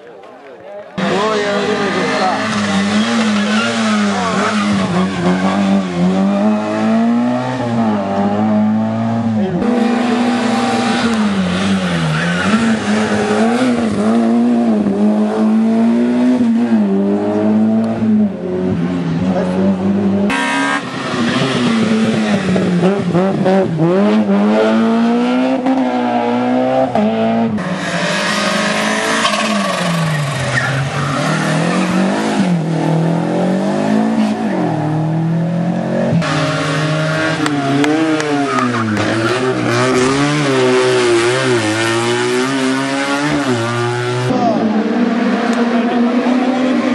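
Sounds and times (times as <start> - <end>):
race car engines revving: 0.0 - 46.9.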